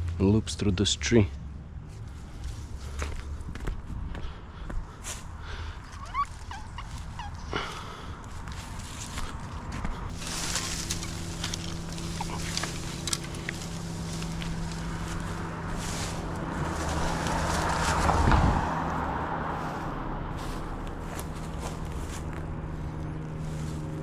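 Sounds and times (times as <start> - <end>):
skid steer engine running: 6.4 - 24.0.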